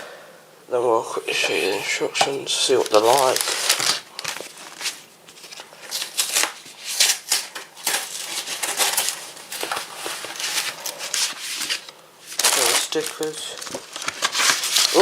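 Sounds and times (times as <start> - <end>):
plastic and paper crinkling: 1.3 - 15.0.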